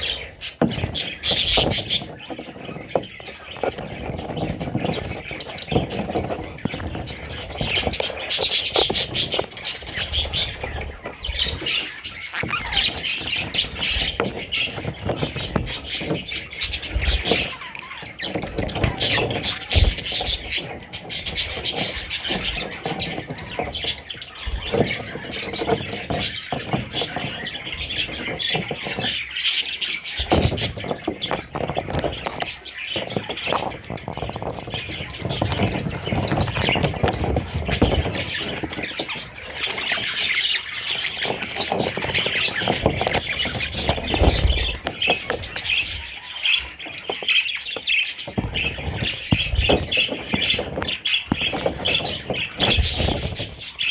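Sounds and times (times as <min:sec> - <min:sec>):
budgerigars chirping and warbling: 0:00.0 - 0:53.9
bird squawks: 0:11.6 - 0:14.1.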